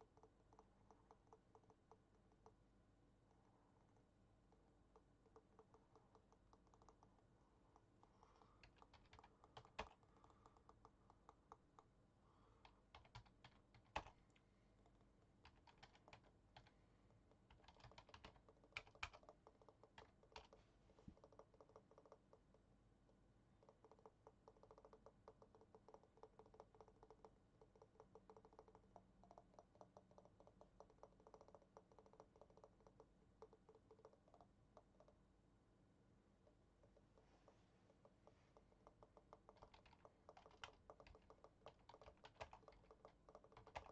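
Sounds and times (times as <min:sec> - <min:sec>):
keyboard keys clicking: 0:08.4 - 0:11.7, 0:12.6 - 0:14.2, 0:15.4 - 0:16.7, 0:17.5 - 0:20.6, 0:38.0 - 0:43.9.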